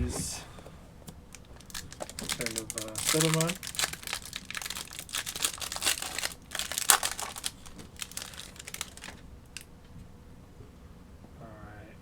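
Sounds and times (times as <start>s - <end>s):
plastic crinkling: 1.1s - 9.7s.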